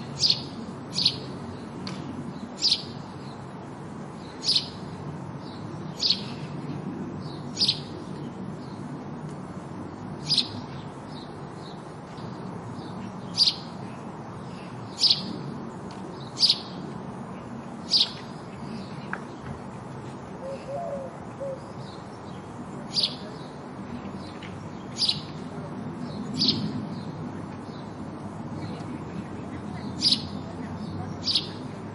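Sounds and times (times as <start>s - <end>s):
sparrow chirping: 0.0s - 3.5s, 4.1s - 6.5s, 7.2s - 8.9s, 10.2s - 16.9s, 17.8s - 18.9s, 20.5s - 23.6s, 24.2s - 28.0s, 29.5s - 31.9s.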